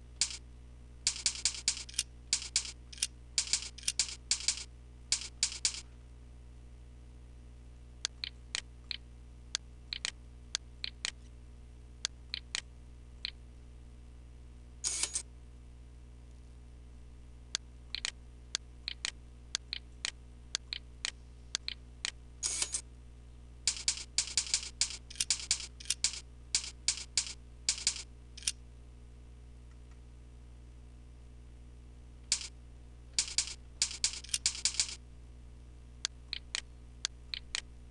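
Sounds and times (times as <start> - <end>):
low electrical hum: 0.0 - 37.9
keyboard keystrokes: 0.2 - 0.4, 1.1 - 5.8, 23.7 - 28.6, 32.3 - 32.5, 33.2 - 35.0
mouse clicking: 0.2 - 0.4, 1.1 - 5.8, 8.1 - 9.0, 9.9 - 10.2, 10.8 - 11.2, 12.3 - 13.4, 17.9 - 18.2, 18.9 - 22.8, 23.7 - 28.6, 32.3 - 32.5, 33.2 - 35.0, 36.0 - 37.7.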